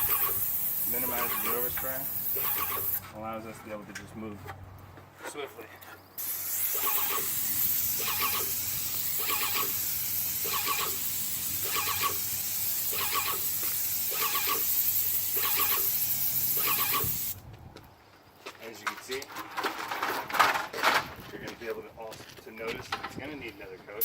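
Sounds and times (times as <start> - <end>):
paint sprayer hissing: 0.0 - 3.0, 6.2 - 17.4
squealing: 0.0 - 3.0, 6.8 - 8.6.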